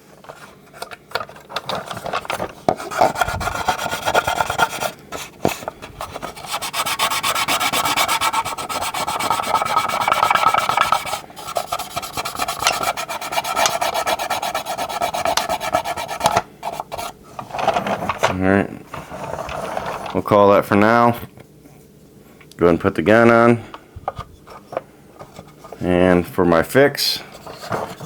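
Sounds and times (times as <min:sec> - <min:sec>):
cotton swab scrubbing plastic: 0:02.7 - 0:17.1.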